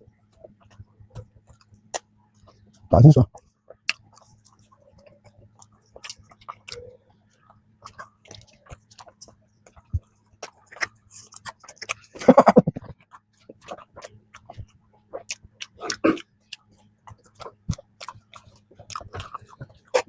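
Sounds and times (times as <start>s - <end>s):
chewing with wet mouth clicks: 0.2s - 12.2s, 12.8s - 20.0s.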